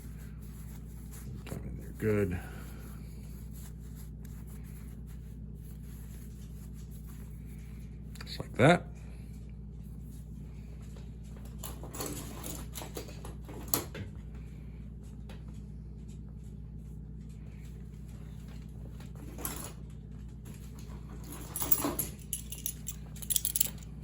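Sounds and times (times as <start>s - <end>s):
rustling and scraping: 0.0s - 8.0s
steady low hum: 0.0s - 24.0s
metallic clatters: 21.4s - 23.9s.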